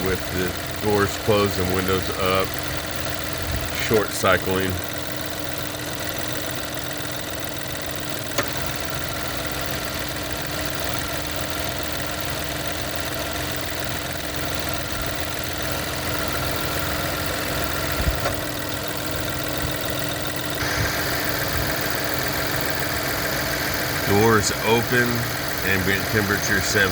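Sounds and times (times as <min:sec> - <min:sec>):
car engine idling: 0:00.0 - 0:26.9
high-pitched whir: 0:20.6 - 0:21.9.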